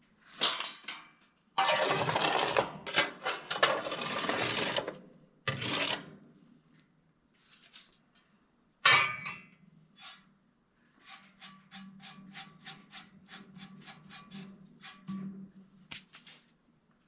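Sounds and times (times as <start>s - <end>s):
metal clang: 8.8s - 9.5s.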